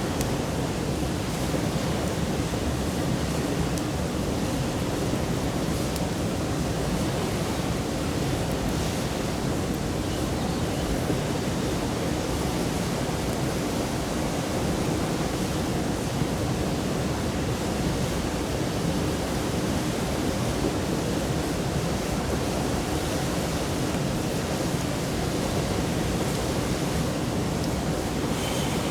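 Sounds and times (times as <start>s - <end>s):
stream flowing over rocks: 27.9s - 28.9s.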